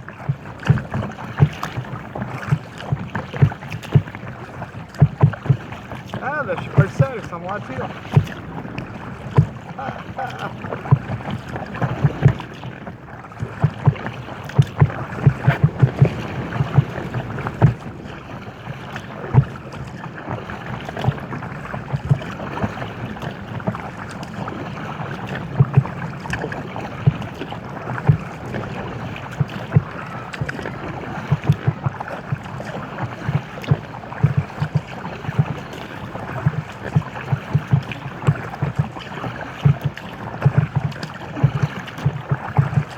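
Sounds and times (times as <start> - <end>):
small waves slapping a hull: 0.0 - 42.9
steady wash of water: 0.0 - 42.9.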